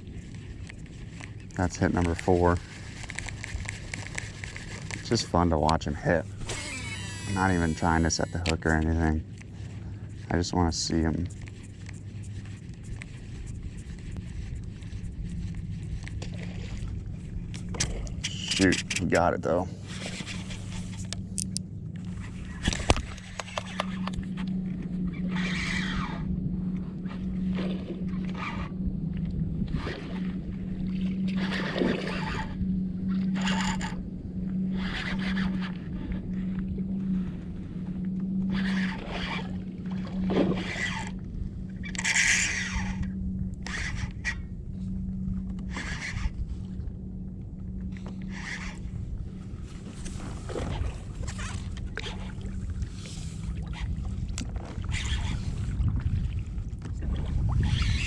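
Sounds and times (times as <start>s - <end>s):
steady low hum: 0.0s - 58.0s
water splashing against a kayak: 29.3s - 33.9s, 38.4s - 43.0s, 47.9s - 58.0s.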